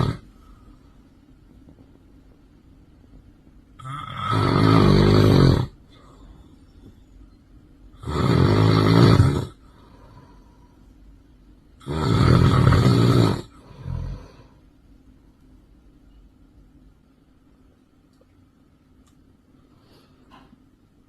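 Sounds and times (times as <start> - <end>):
person snoring loudly: 0.0 - 0.2, 3.8 - 5.8, 8.0 - 9.7, 11.8 - 14.5.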